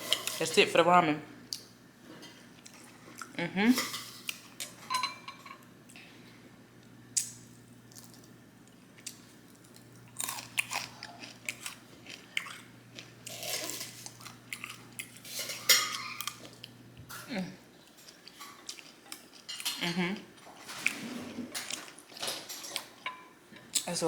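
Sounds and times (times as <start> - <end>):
chewing crunchy food: 2.6 - 3.4, 7.2 - 16.8, 17.7 - 23.0.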